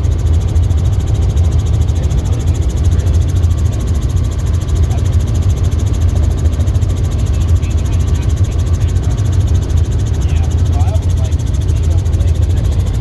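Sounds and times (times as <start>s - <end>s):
helicopter rotor drone: 0.0s - 13.0s.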